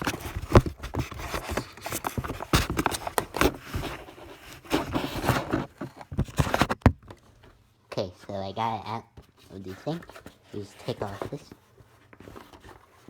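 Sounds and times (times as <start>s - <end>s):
cardboard and plastic packaging rustling: 0.0s - 13.0s.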